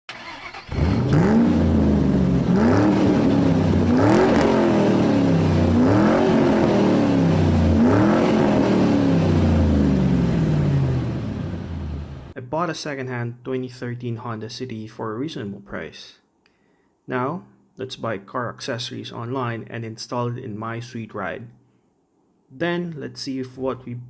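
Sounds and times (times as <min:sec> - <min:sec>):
car engine revving: 0:00.1 - 0:12.4.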